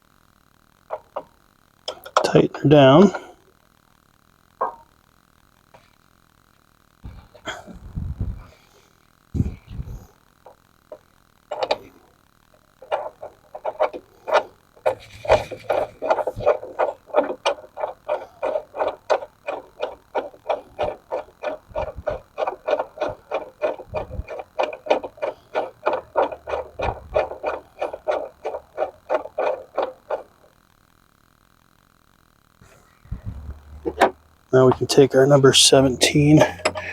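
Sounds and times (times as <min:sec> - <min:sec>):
tool clicking rapidly: 0:11.5 - 0:11.9, 0:12.8 - 0:30.5.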